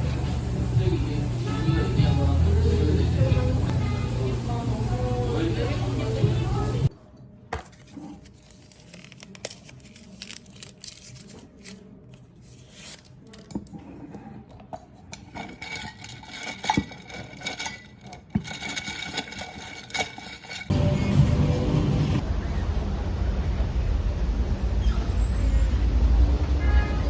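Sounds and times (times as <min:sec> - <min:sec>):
paper crinkling and tearing: 0:07.7 - 0:13.5.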